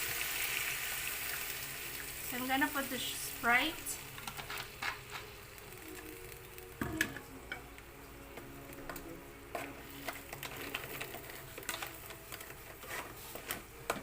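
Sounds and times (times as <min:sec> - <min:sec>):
pan crackling and popping: 0:00.0 - 0:14.0.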